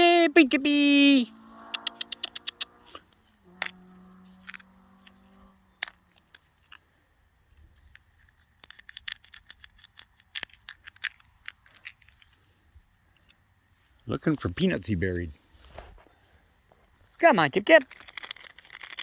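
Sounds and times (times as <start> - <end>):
insects chirring: 0.0 - 19.0
low hum: 1.2 - 6.2
dry clicks and scratches: 4.4 - 5.2, 5.8 - 6.9, 7.8 - 12.4, 17.6 - 19.0.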